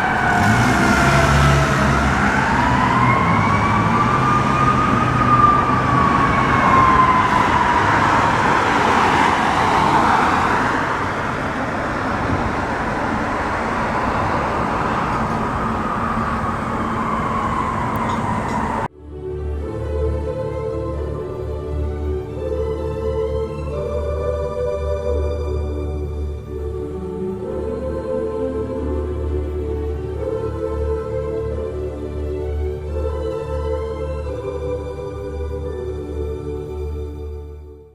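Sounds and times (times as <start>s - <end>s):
fire truck siren wailing: 0.0s - 18.9s
road traffic: 0.0s - 18.9s
truck rumble: 0.0s - 18.9s.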